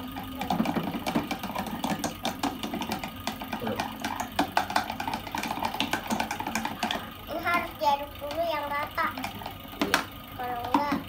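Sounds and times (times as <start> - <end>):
spoon stirring slime in a bowl: 0.1 - 7.6.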